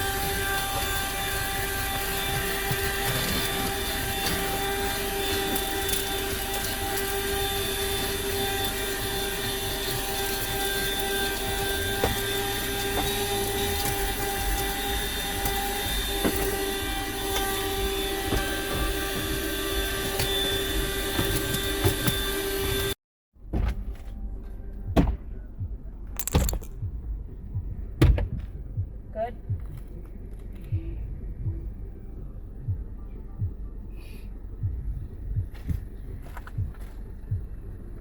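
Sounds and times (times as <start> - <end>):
handheld vacuum whining: 0.0 - 23.0.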